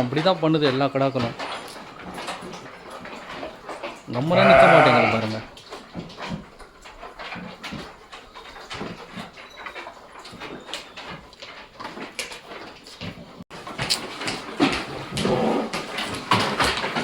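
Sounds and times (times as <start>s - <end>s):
knocks and scrapes: 0.0s - 17.0s
ram scuffling: 0.0s - 17.0s
short animal cries: 4.3s - 5.3s.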